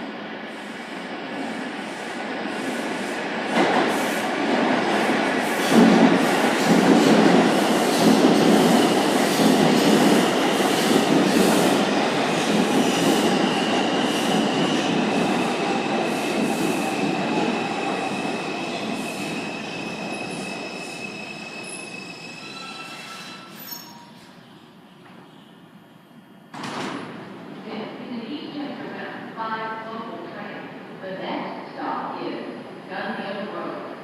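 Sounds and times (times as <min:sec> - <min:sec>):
wheel and brake squeal: 0:19.6 - 0:24.6.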